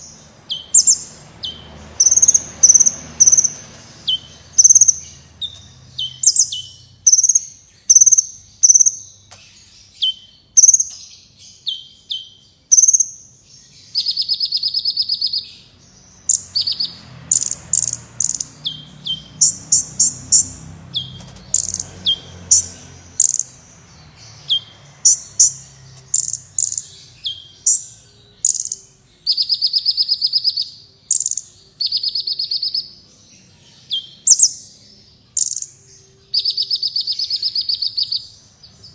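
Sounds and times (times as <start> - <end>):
bird buzzy trills: 0.0 - 33.0
bird high chirps: 0.0 - 38.9.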